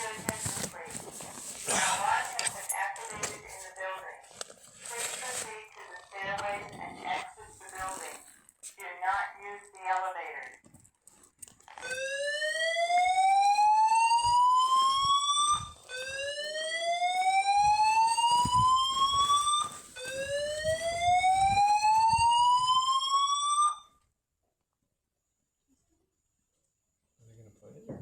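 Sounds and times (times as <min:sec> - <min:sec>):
fire alarm whoop tone: 0:11.8 - 0:24.0.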